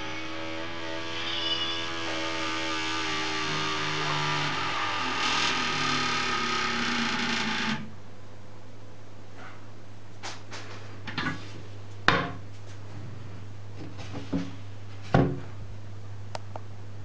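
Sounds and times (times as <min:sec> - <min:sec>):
steady low hum: 0:00.0 - 0:17.0
toilet creaking: 0:01.8 - 0:07.9.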